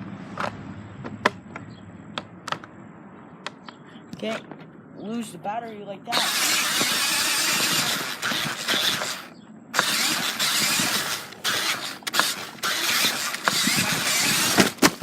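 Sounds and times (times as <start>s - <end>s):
rc car motor and tyres running: 6.1s - 15.0s.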